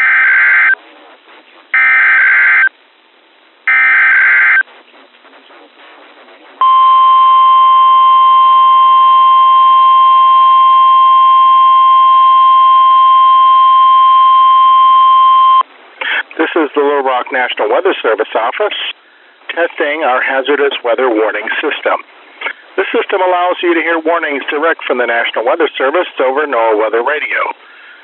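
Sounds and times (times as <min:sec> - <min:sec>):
steady warning alert tone: 0:06.6 - 0:15.6
warbling data tones: 0:06.6 - 0:15.6.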